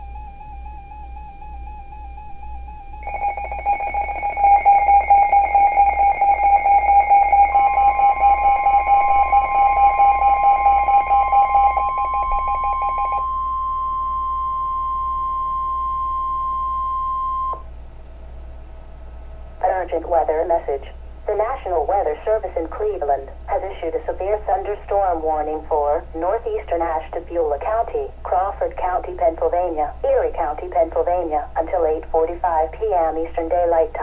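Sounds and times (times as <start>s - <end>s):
pulsing electronic alarm beep: 0.0s - 17.6s
steady high alarm tone: 0.0s - 17.7s.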